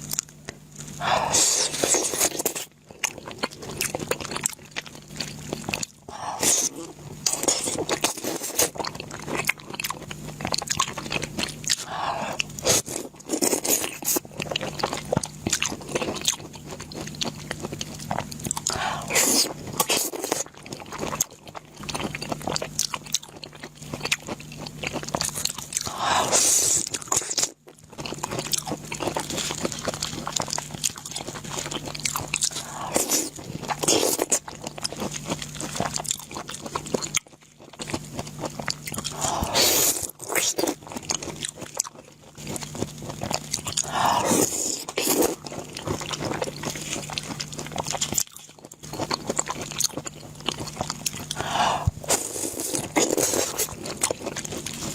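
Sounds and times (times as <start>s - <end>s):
crunchy chewing of food: 0.0s - 54.9s
faint low hum: 0.0s - 54.9s.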